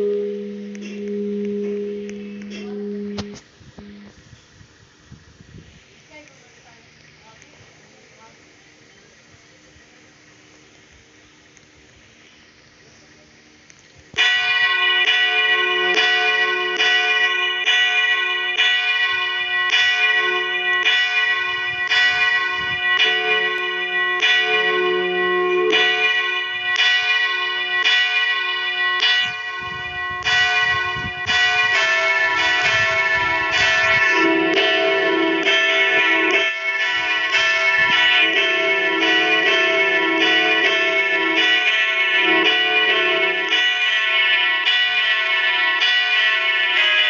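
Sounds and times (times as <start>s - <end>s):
church bells ringing: 0.0s - 4.2s, 14.1s - 47.0s.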